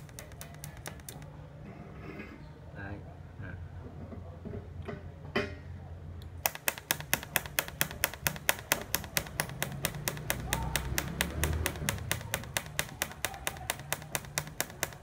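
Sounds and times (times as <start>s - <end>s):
welder pulse unit clicking: 0.0s - 1.3s, 6.4s - 15.0s.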